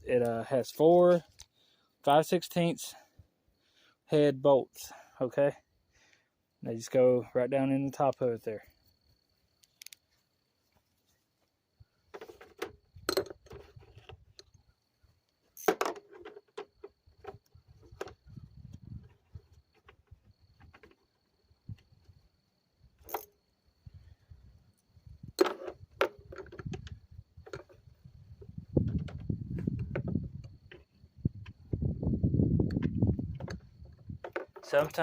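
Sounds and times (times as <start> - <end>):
metal clinking and rattling: 12.2 - 14.1, 15.5 - 18.4, 23.0 - 23.4.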